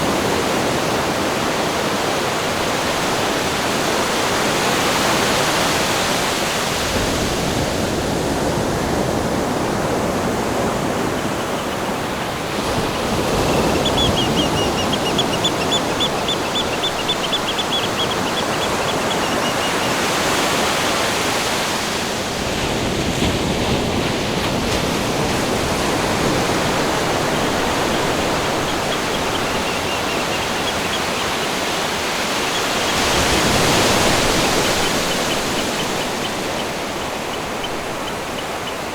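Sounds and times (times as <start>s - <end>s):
rushing water: 0.0s - 38.9s
bird high trill: 13.0s - 20.6s, 27.2s - 38.9s.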